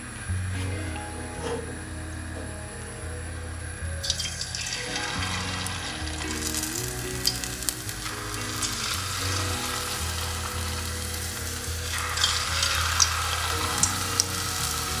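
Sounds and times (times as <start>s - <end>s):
potato slices frying in oil: 4.0s - 15.0s.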